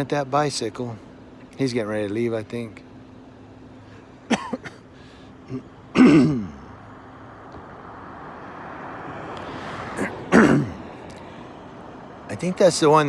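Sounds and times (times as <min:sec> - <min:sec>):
traffic noise: 0:00.0 - 0:13.0
man clearing his throat: 0:04.3 - 0:04.8, 0:05.4 - 0:06.7, 0:10.0 - 0:10.8.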